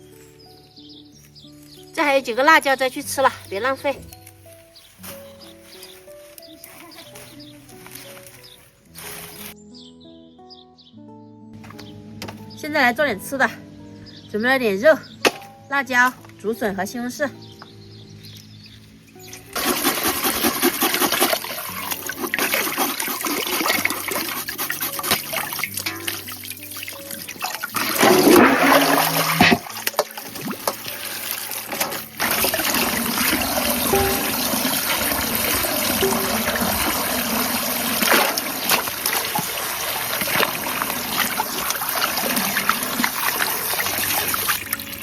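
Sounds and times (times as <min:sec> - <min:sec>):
light background music: 0:00.0 - 0:45.0
running water splashing: 0:19.3 - 0:45.0.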